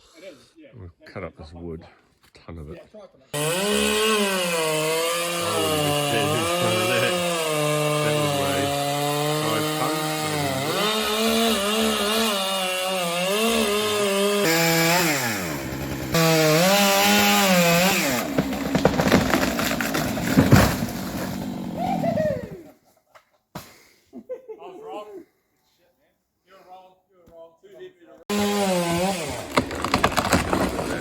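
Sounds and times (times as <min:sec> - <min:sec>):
chainsaw cutting wood: 0:03.4 - 0:22.2, 0:28.3 - 0:31.0.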